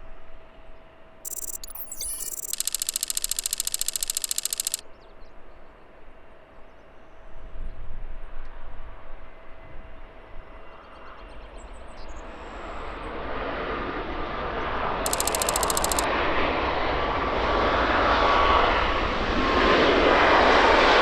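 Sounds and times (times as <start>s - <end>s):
rapidly pulsing electronic buzz: 1.3s - 4.8s, 15.1s - 16.1s.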